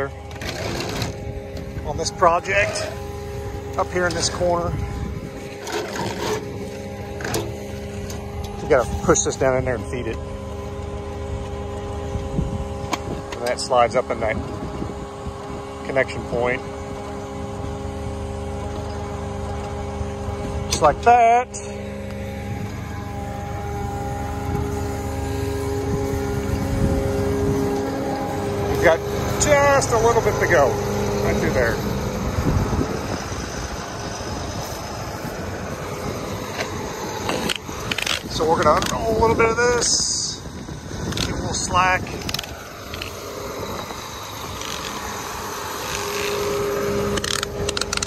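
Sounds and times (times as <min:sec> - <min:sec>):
tractor diesel engine droning: 0:00.0 - 0:48.0.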